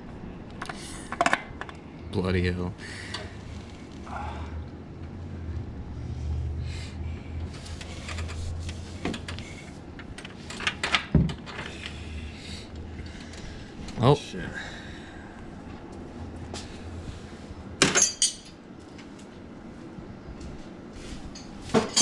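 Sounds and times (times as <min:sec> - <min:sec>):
low hum: 0:00.0 - 0:21.6
metal tools clinking and knocking: 0:17.8 - 0:18.6, 0:21.4 - 0:22.0.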